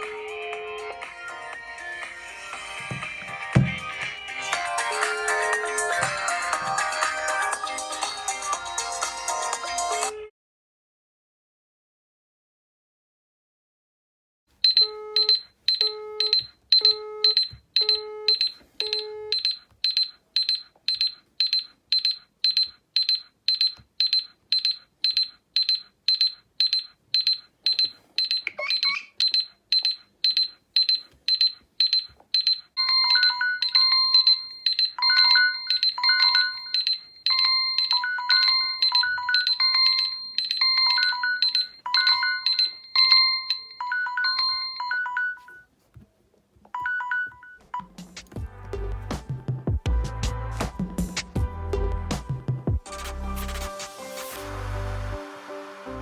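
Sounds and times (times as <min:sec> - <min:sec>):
melodic ringtone: 0:01.0 - 0:10.1, 0:25.2 - 0:45.7, 0:46.8 - 0:48.0
high-pitched electronic alarm beeps: 0:14.7 - 0:45.6.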